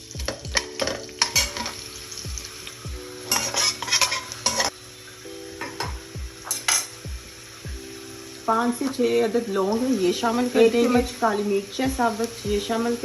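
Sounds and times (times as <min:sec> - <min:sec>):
onion sizzling in hot oil: 0:00.0 - 0:13.0
spoon scraping pot: 0:03.3 - 0:04.7.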